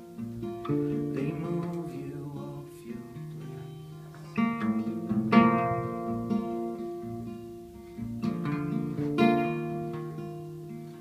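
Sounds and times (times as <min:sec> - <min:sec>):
acoustic guitar strumming chords: 0:00.0 - 0:11.0
person singing: 0:00.6 - 0:06.3.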